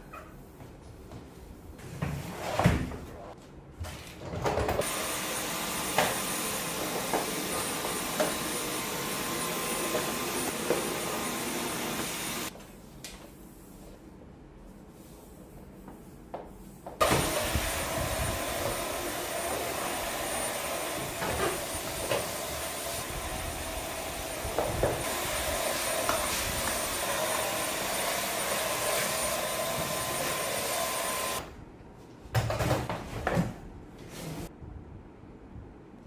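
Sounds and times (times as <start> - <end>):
vacuum cleaner whining: 4.5 - 12.5, 17.0 - 31.5
vacuum cleaner knocking: 4.8 - 12.5, 17.0 - 31.4.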